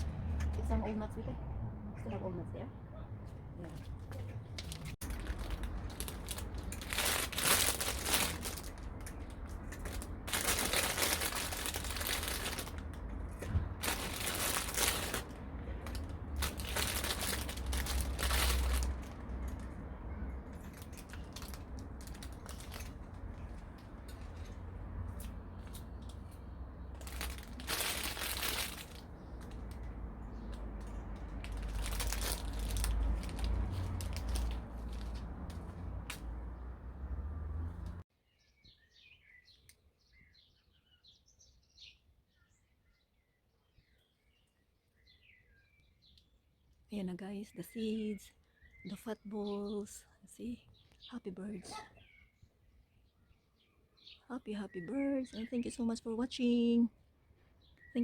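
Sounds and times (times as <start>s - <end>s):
packaging rustling and crinkling: 4.6s - 19.6s, 20.6s - 24.4s, 26.9s - 29.9s, 31.2s - 36.2s.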